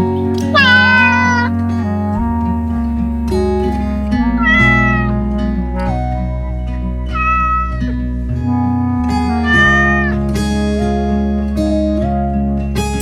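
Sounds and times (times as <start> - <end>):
background music: 0.0 - 13.0
cat meowing: 0.5 - 1.6, 4.4 - 5.3, 7.1 - 8.1, 9.3 - 10.3.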